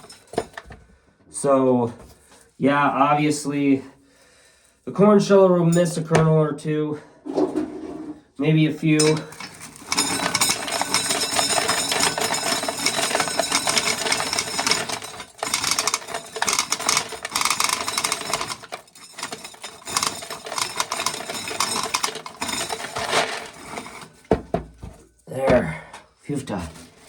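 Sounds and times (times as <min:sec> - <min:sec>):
corn sheller rattling: 0:00.0 - 0:00.7, 0:08.8 - 0:24.3.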